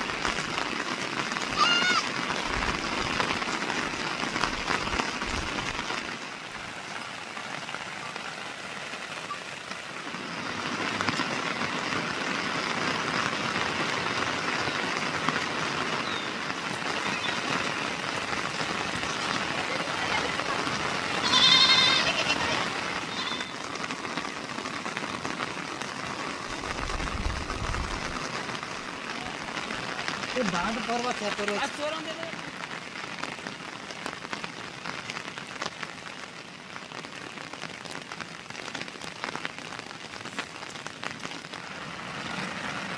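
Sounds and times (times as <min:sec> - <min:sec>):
heavy rain falling: 0:00.0 - 0:42.9.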